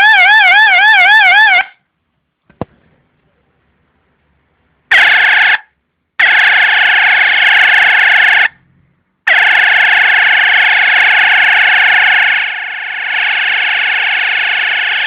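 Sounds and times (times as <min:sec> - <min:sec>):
electronic police siren blasts: 0:00.0 - 0:01.8, 0:04.9 - 0:08.6, 0:09.3 - 0:15.0.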